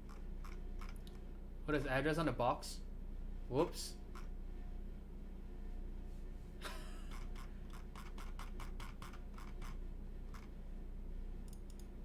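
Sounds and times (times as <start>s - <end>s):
light computer clicks: 0.1s - 1.2s, 11.4s - 11.9s.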